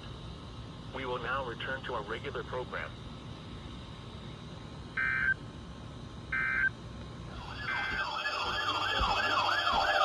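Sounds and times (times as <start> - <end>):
digital data tone bursts: 7.3 - 10.0
warbling alarm siren: 7.3 - 10.0.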